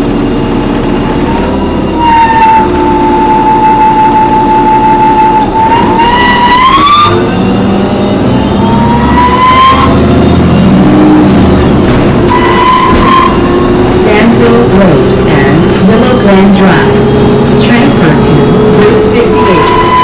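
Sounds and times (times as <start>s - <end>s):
low hum of diesel engine: 0.0s - 20.0s
high-pitched screech: 1.9s - 7.6s, 8.5s - 11.3s, 12.2s - 16.2s, 17.7s - 20.0s.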